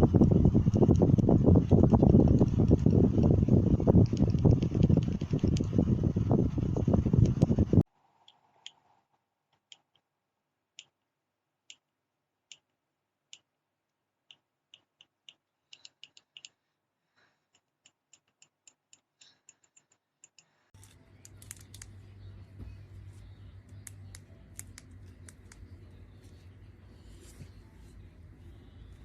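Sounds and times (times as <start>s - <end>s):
low hum: 0.0s - 9.2s, 20.8s - 29.0s
small sharp clicks: 17.8s - 22.0s, 23.6s - 25.8s.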